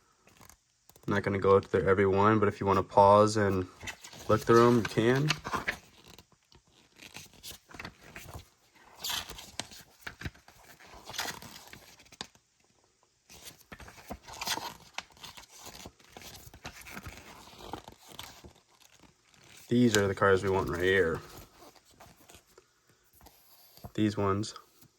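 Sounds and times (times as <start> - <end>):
paper packaging rustling: 3.4 - 12.4, 13.3 - 22.6.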